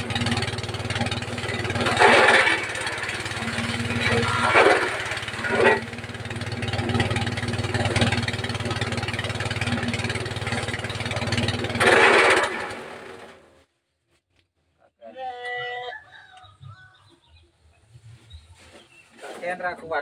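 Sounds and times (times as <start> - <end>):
forage chopper chopping bursts: 0.0 - 13.4
diesel engine running: 0.0 - 13.5.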